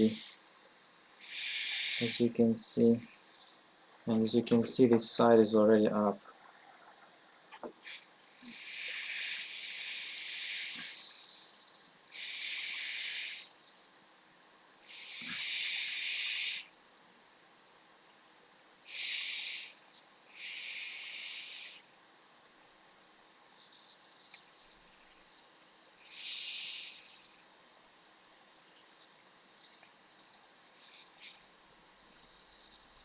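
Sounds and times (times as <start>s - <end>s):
hot air blower hissing: 0.0s - 5.3s, 7.6s - 16.8s, 18.8s - 22.0s, 23.5s - 27.5s, 28.5s - 31.5s.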